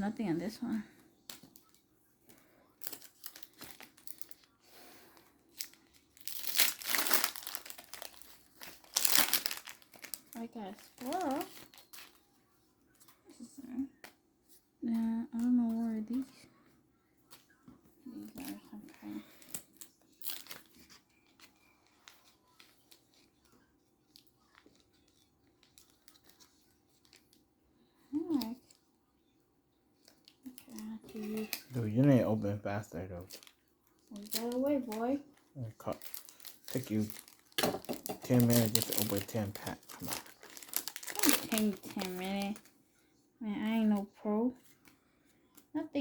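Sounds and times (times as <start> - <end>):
foil wrapper crinkling and tearing: 1.2 - 12.4, 18.2 - 27.4, 30.0 - 32.2, 33.1 - 42.7.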